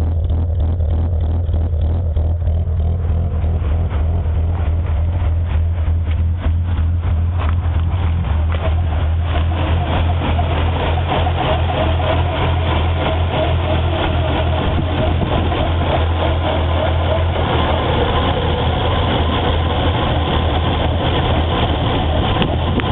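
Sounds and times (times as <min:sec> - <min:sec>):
car engine idling with misfire: 0:00.0 - 0:22.9.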